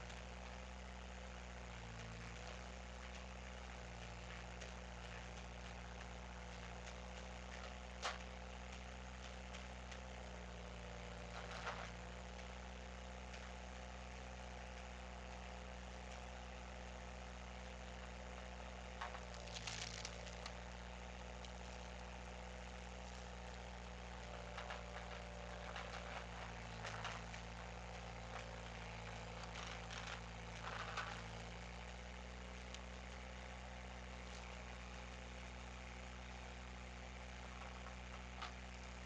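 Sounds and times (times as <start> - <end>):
engine running: 0.0 - 39.0
wood cracking and clicks: 19.0 - 20.6.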